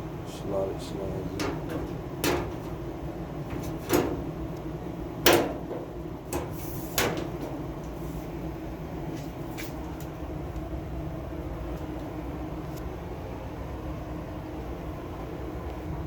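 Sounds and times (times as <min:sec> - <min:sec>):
steady low hum: 0:00.0 - 0:16.0
metal clunks and knocks: 0:01.3 - 0:04.4, 0:05.2 - 0:07.7.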